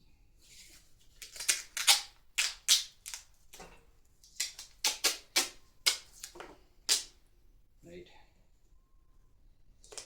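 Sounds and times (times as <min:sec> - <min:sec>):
duct tape ripping off roll: 0:01.2 - 0:03.2.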